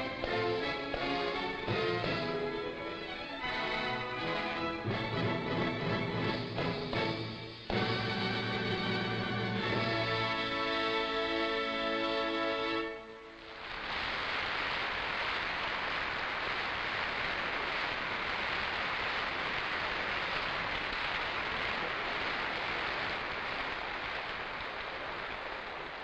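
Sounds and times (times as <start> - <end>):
audience applauding: 0.0 - 6.9, 13.6 - 26.0.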